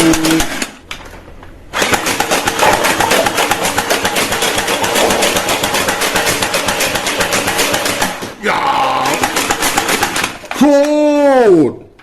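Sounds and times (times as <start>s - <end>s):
toy gun rattling on automatic: 1.8s - 8.2s, 9.2s - 10.6s.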